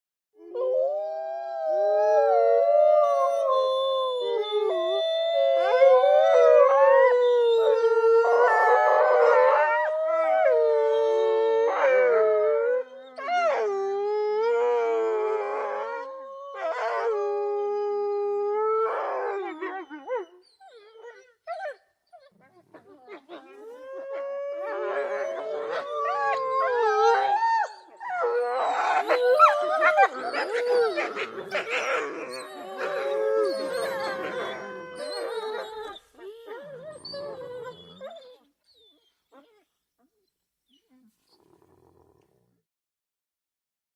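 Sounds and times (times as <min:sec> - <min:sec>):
wolves howling in chorus: 0:00.5 - 0:20.1, 0:23.4 - 0:38.3.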